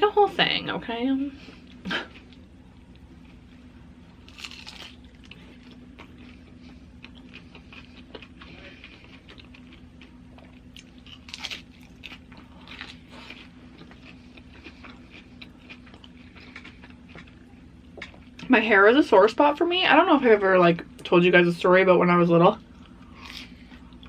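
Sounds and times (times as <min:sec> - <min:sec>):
chewing and crunching chips: 0:01.4 - 0:18.5, 0:22.6 - 0:24.0.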